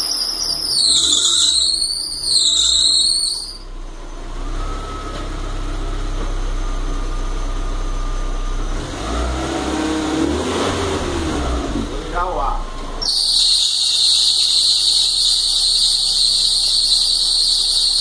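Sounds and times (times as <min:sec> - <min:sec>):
drive belt squealing: 0:00.0 - 0:03.7, 0:13.0 - 0:18.0
car engine idling: 0:00.0 - 0:18.0.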